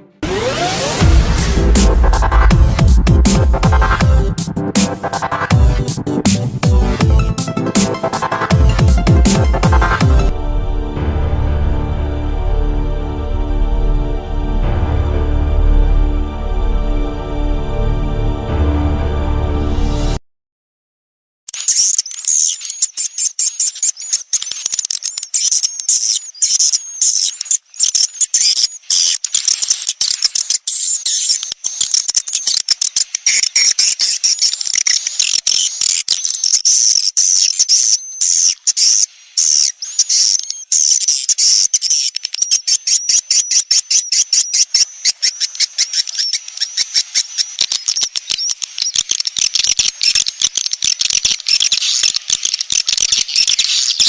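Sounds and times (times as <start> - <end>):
swiftlets twittering and clicking: 0.2 - 10.3, 21.5 - 54.0.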